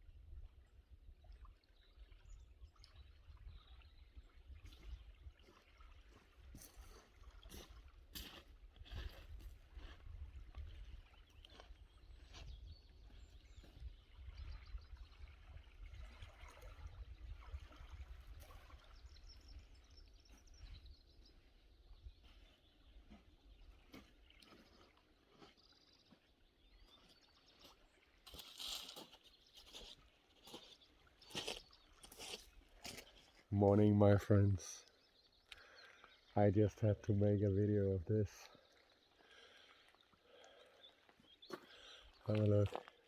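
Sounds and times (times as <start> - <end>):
faint bird calls: 34.8 - 36.9.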